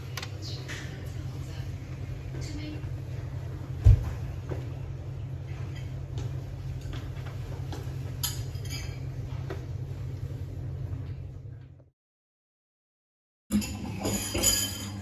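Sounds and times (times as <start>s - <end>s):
cups or dishes clinking: 8.2s - 9.1s, 13.5s - 15.0s.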